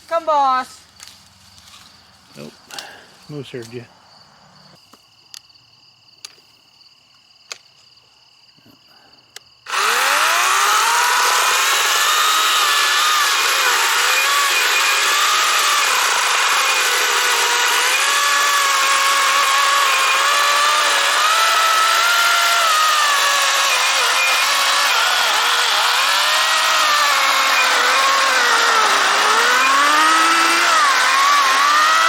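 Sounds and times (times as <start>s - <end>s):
chainsaw cutting log: 0.2s - 3.0s, 9.6s - 32.0s.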